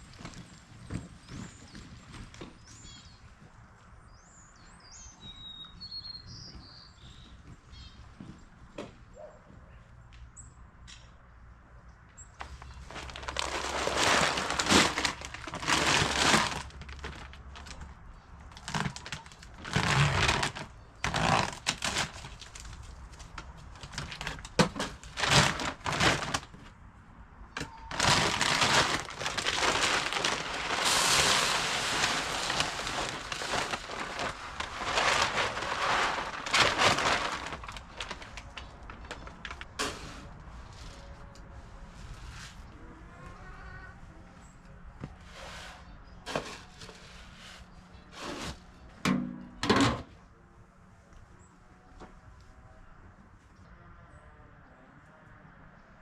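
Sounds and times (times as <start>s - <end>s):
rustling and crackling: 12.2s - 26.8s, 27.5s - 42.8s.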